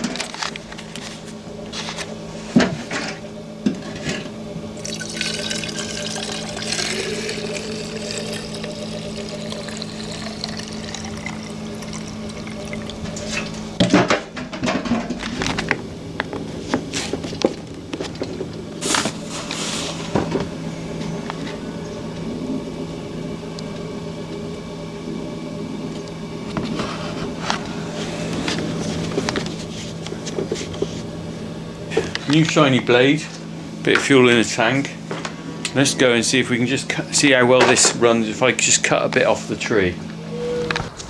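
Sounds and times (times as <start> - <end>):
fuel pouring into tank: 4.8 - 13.9.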